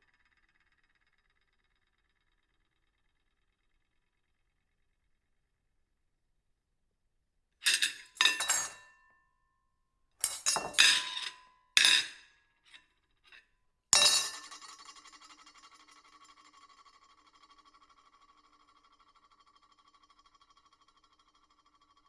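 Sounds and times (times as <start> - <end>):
plate ringing: 7.7 - 8.9, 14.0 - 14.7
plates clinking: 7.7 - 8.9, 10.2 - 12.2, 14.0 - 14.6.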